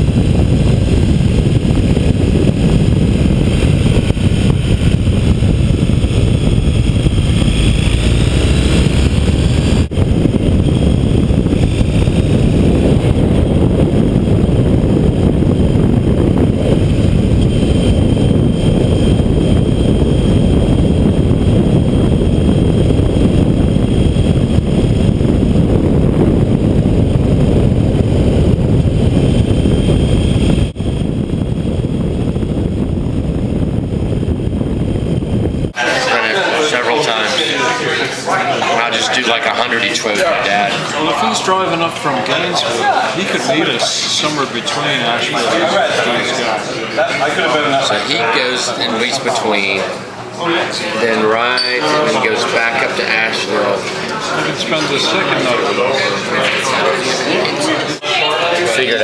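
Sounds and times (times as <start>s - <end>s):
vehicle engine: 0.0s - 25.7s
wind buffeting microphone: 0.0s - 38.1s.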